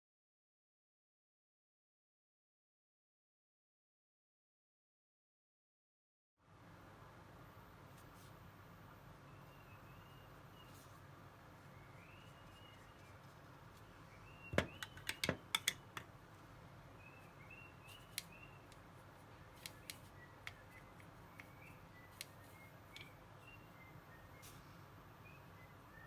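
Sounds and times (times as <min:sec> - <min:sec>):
faint bird chirps: 0:09.2 - 0:15.5, 0:16.9 - 0:18.8, 0:19.6 - 0:26.0
sharp clicks and taps: 0:14.6 - 0:16.1, 0:19.6 - 0:21.6.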